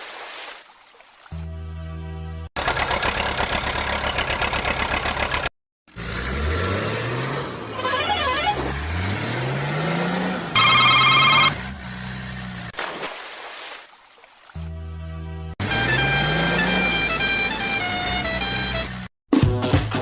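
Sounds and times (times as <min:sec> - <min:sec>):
rapid engine rattle: 0:02.6 - 0:05.5
engine revving: 0:02.6 - 0:12.8, 0:15.5 - 0:19.1.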